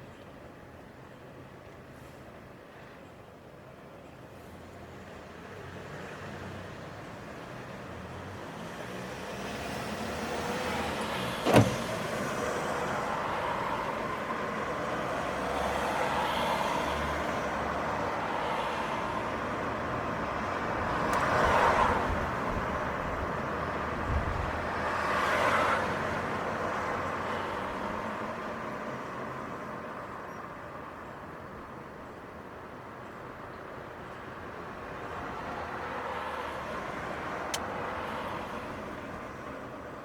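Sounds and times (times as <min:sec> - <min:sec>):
cars passing: 0:05.6 - 0:29.6, 0:34.6 - 0:39.9.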